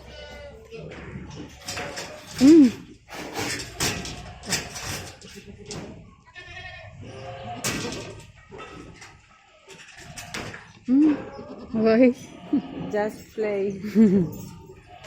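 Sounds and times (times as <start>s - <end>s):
goat bleating: 0.0s - 1.0s, 5.2s - 8.2s, 11.0s - 13.1s
knocks and rustles: 0.8s - 6.2s.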